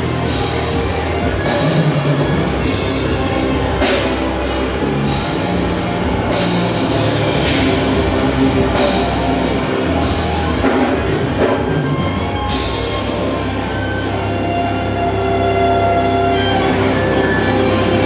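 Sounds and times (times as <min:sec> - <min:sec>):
cymbal crashes: 0:00.0 - 0:14.1
rock music: 0:00.0 - 0:18.0.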